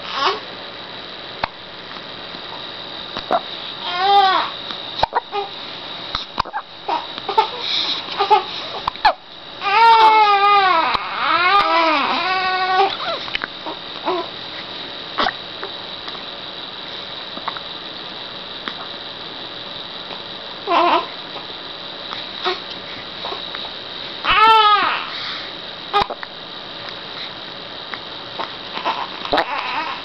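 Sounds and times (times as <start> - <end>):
baby crying: 3.8 - 4.5, 9.6 - 13.2, 20.7 - 21.1, 24.2 - 25.1, 28.8 - 30.0.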